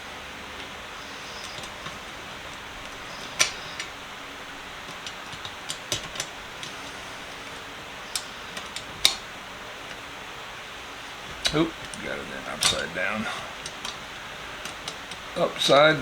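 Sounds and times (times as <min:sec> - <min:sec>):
faint steady hiss: 0:00.0 - 0:16.0
metal sockets clicking: 0:00.6 - 0:04.0, 0:04.6 - 0:09.3, 0:11.3 - 0:15.8.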